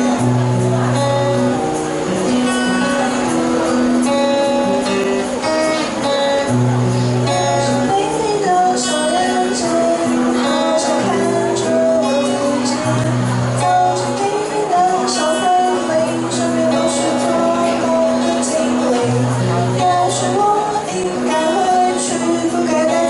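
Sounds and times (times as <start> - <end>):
strummed acoustic guitar: 0.0 - 23.0
voices singing: 7.2 - 23.0.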